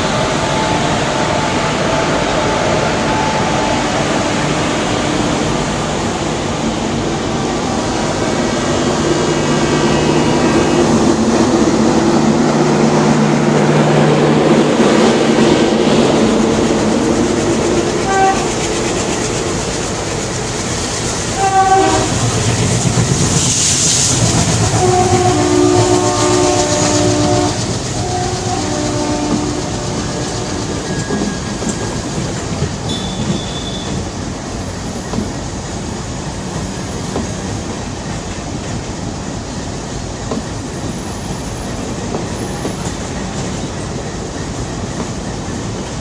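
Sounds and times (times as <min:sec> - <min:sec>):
train wheels clattering: 0:14.7 - 0:46.0
locomotive horn blasts: 0:18.0 - 0:18.5, 0:21.4 - 0:22.2, 0:24.8 - 0:30.7, 0:32.9 - 0:34.0.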